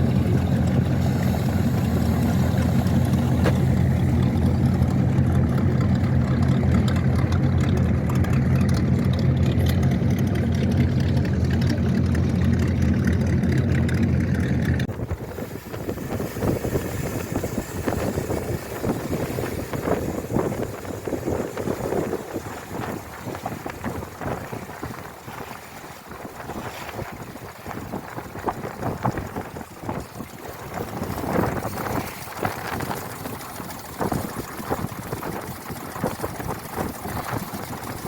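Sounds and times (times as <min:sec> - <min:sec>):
motorboat engine running: 0:00.0 - 0:38.0
water noise: 0:00.0 - 0:38.0
wind on microphone: 0:14.8 - 0:38.0.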